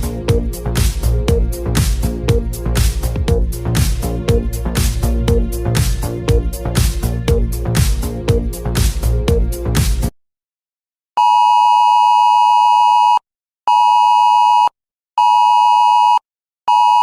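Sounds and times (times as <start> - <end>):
electronic music: 0.0 - 10.1.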